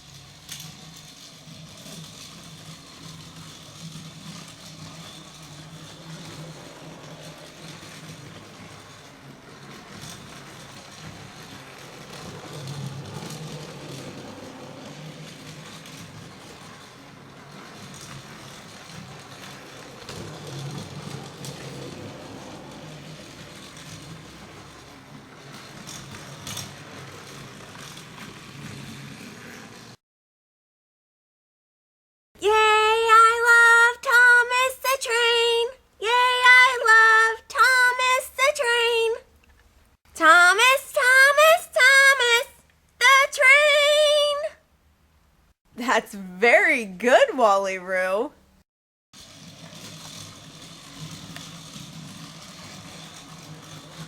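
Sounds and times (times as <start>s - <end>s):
toy train motor whirring: 0.0s - 30.0s, 32.4s - 44.5s, 49.2s - 54.0s
wheels rattling on track: 0.0s - 30.0s, 32.6s - 39.6s, 49.2s - 54.0s.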